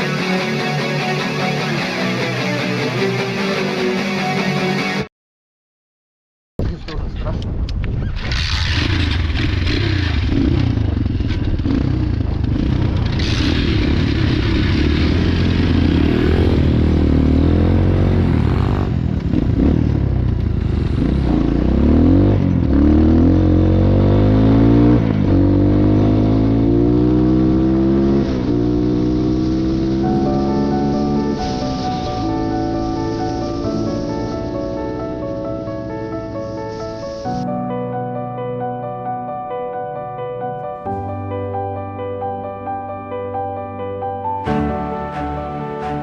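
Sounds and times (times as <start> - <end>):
wind noise: 6.6 - 9.4
motorcycle engine accelerating: 7.7 - 37.5.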